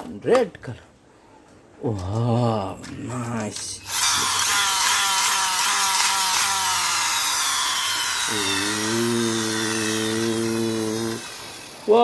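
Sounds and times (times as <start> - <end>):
toy gun buzzy falling tone: 3.8 - 12.0.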